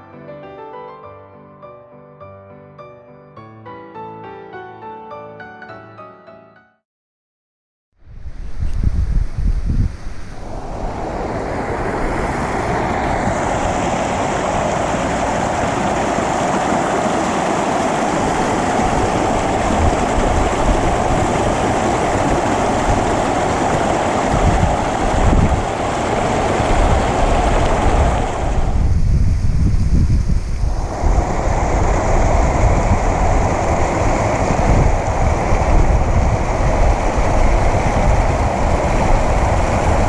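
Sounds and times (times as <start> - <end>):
wind buffeting microphone: 8.0 - 40.0
rushing water: 10.0 - 40.0.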